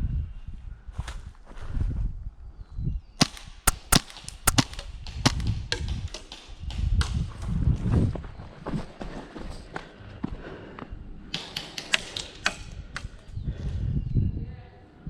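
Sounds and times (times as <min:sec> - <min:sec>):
airsoft pistol shots: 0:03.7 - 0:04.7.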